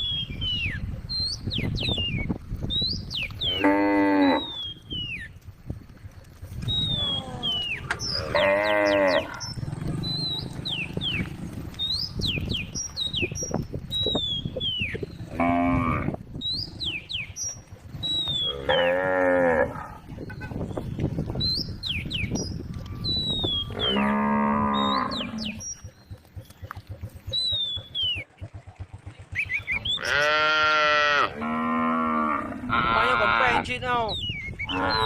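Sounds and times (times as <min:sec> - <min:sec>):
cows mooing: 0:03.4 - 0:04.8, 0:06.8 - 0:11.7, 0:15.2 - 0:16.2, 0:18.2 - 0:20.1, 0:23.5 - 0:25.7, 0:29.9 - 0:33.7, 0:34.6 - 0:35.0.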